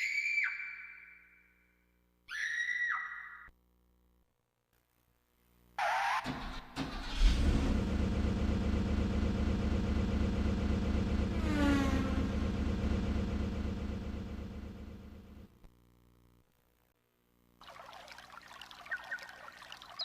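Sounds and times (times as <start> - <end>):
rising engine whine: 7.2 - 15.5
low engine rumble: 7.2 - 15.6.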